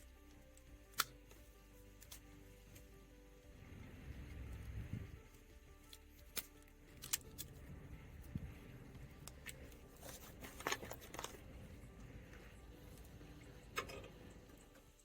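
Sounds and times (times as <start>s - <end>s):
clicks and rustles of tools and wire: 5.2s - 7.6s, 9.2s - 11.6s.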